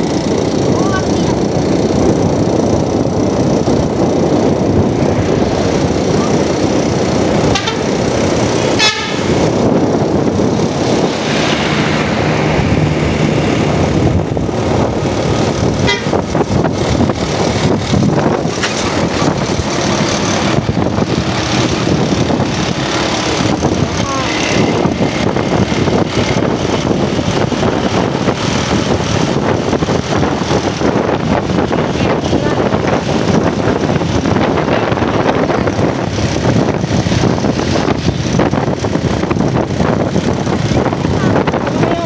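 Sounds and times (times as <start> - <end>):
road and wind noise: 0.0 - 42.0
bus horns: 7.4 - 9.6, 15.8 - 16.4.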